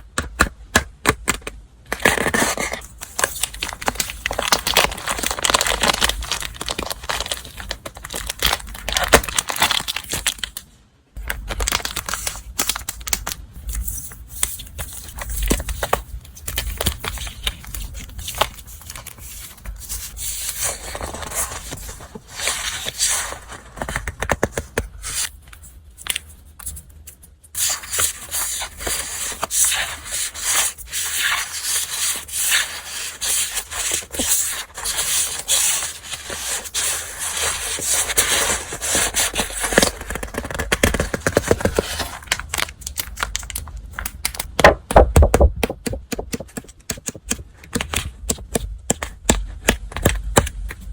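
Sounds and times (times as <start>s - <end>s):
paper and packaging rustling: 1.9s - 26.8s, 27.6s - 44.6s.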